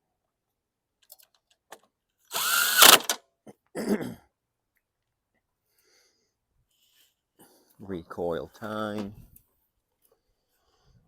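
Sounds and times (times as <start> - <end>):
cordless drill whine: 2.3 - 3.2.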